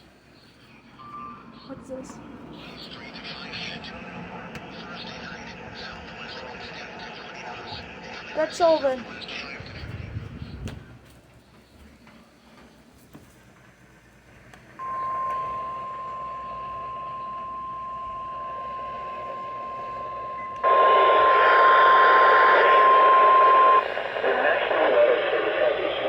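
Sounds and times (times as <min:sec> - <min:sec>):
radio static: 0:02.5 - 0:10.6, 0:19.2 - 0:26.0.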